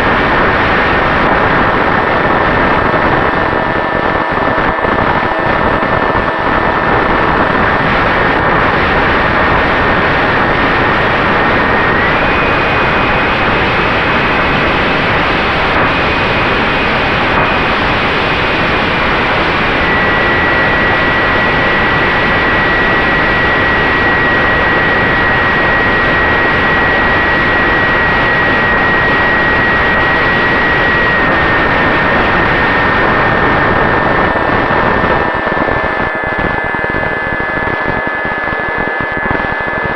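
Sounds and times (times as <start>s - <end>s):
electric motor whine: 19.0s - 39.9s.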